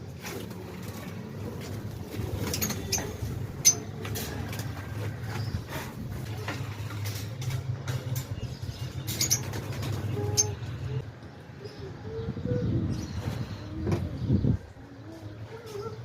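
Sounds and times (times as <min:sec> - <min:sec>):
cages and dishes clicking: 0:02.3 - 0:10.4.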